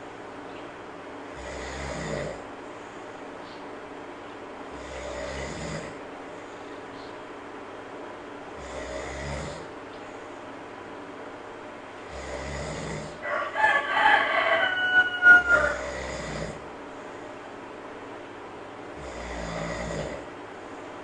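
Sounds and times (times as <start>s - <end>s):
person snoring slowly: 1.3s - 2.5s, 4.7s - 6.6s, 8.6s - 9.8s, 12.0s - 13.2s, 15.4s - 16.7s, 19.0s - 20.4s
rooster crowing: 13.2s - 16.5s.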